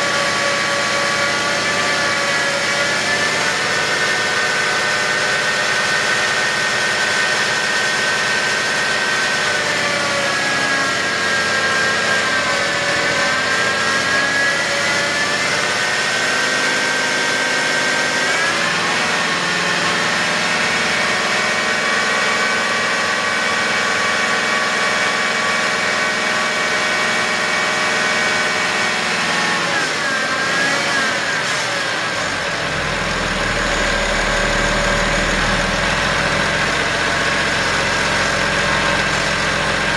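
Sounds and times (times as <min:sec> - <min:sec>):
diesel engine running: 0:00.0 - 0:39.9
belt drive whine: 0:31.2 - 0:39.6
deep hum: 0:32.3 - 0:39.5.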